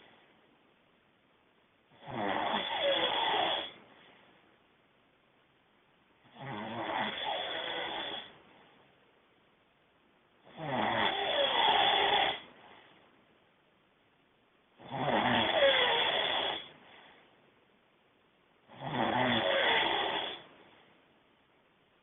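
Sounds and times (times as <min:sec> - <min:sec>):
quiet breathing: 0:00.0 - 0:00.6, 0:02.7 - 0:04.6, 0:11.2 - 0:13.2, 0:15.5 - 0:17.5, 0:19.3 - 0:21.2
man snoring loudly: 0:02.0 - 0:03.8, 0:06.3 - 0:08.3, 0:10.5 - 0:12.4, 0:14.8 - 0:16.7, 0:18.7 - 0:20.4.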